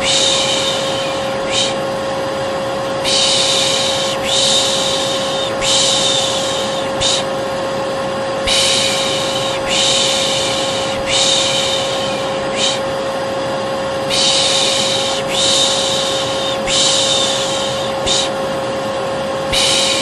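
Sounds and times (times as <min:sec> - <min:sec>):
person shushing: 0:00.0 - 0:01.8, 0:03.0 - 0:07.3, 0:08.4 - 0:13.0, 0:14.1 - 0:18.4, 0:19.5 - 0:20.0
vacuum cleaner running: 0:00.0 - 0:20.0.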